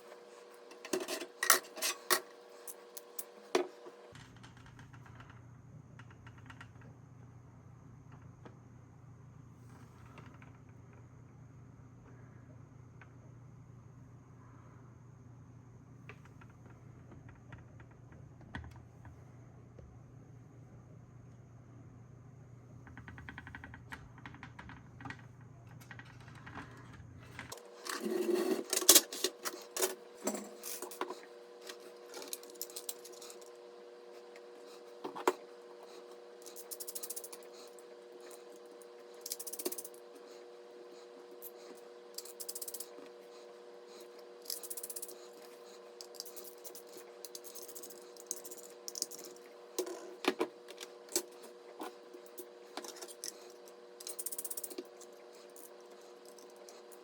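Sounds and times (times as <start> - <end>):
steady low hum: 5.3 - 57.0
small hard parts clicking and rattling: 36.4 - 38.6, 39.2 - 40.0, 41.4 - 43.0, 44.4 - 57.0.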